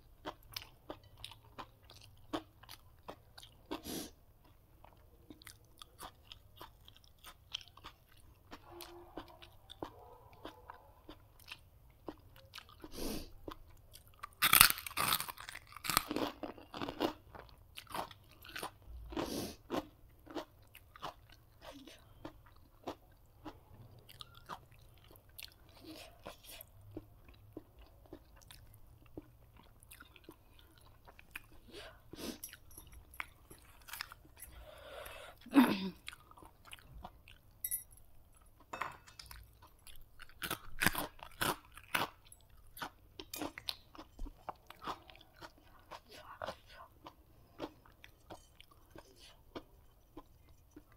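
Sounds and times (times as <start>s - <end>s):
person chewing and crunching food: 0.0s - 50.9s.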